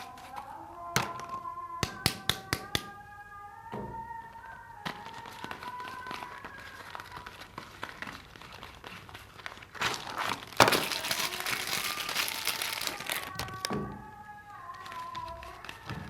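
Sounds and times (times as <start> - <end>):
wrapper crinkling and rustling: 0.0 - 1.4, 4.5 - 16.0.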